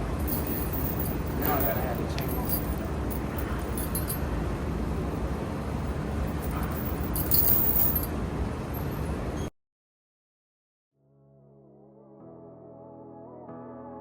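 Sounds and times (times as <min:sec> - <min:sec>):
gym low rumble: 0:00.0 - 0:09.0
light metallic clinks: 0:00.2 - 0:04.3, 0:06.3 - 0:08.1.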